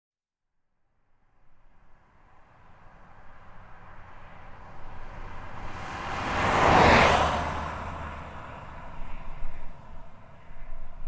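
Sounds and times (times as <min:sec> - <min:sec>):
car approaching on highway: 0:01.5 - 0:11.0.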